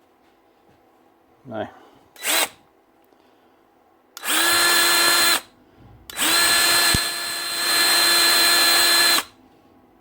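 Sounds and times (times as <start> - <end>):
grease gun motor whining: 6.1 - 9.3.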